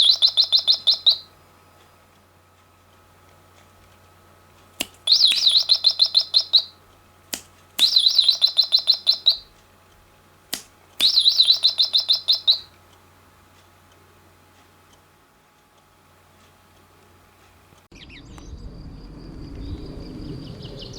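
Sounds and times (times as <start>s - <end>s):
songbird trilling: 0.0s - 1.3s, 5.0s - 6.8s, 7.8s - 9.5s, 11.0s - 12.7s.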